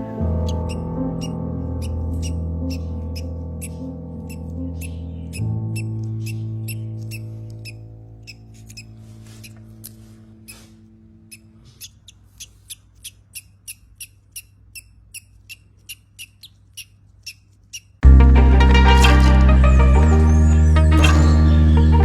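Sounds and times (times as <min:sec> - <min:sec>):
soft background music: 0:00.0 - 0:11.5, 0:18.0 - 0:22.0
parrot chick cheeping: 0:00.0 - 0:18.0, 0:20.0 - 0:22.0.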